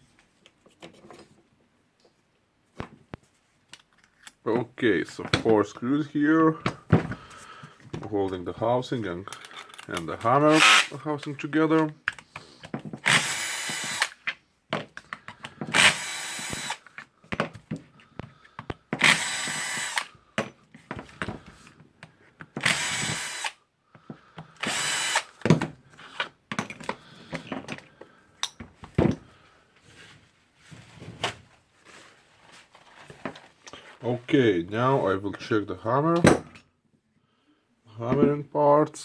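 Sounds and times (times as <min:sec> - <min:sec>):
clatter of screws and parts: 0:09.3 - 0:10.9, 0:24.4 - 0:29.3
power driver spinning screws: 0:09.8 - 0:11.0, 0:13.0 - 0:14.2, 0:15.7 - 0:16.9, 0:19.0 - 0:20.1, 0:22.6 - 0:23.6, 0:24.6 - 0:25.4.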